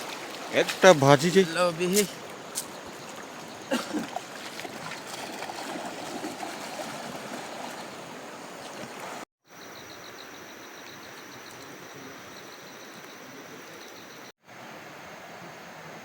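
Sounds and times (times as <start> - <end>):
river water flowing: 0.0 - 9.3, 14.5 - 16.0.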